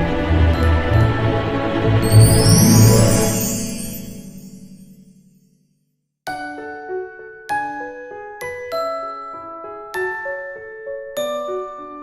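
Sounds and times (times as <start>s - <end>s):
bell-like melody music: 0.0s - 5.6s.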